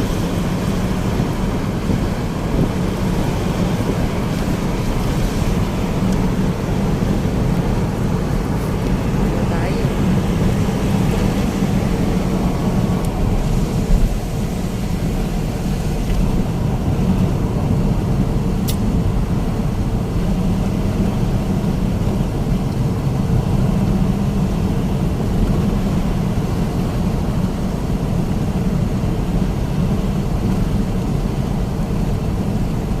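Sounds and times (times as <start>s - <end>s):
vehicle interior engine drone: 0.0s - 33.0s
brief high click: 18.6s - 18.8s.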